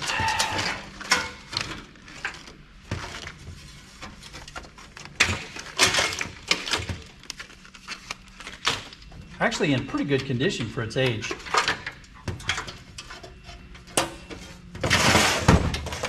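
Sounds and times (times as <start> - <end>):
computer parts clicking and knocking: 0.0 - 7.5.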